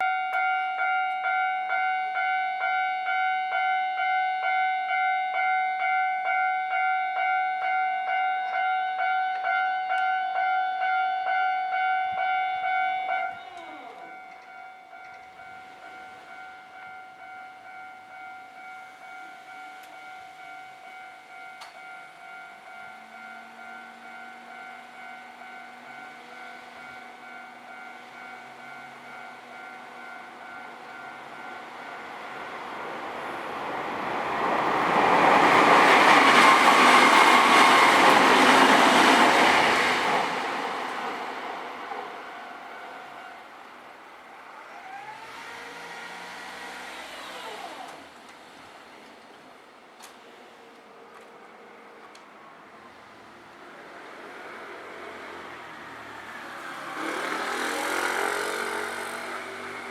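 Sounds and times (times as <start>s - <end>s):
level-crossing warning bell ringing: 0.0s - 47.6s.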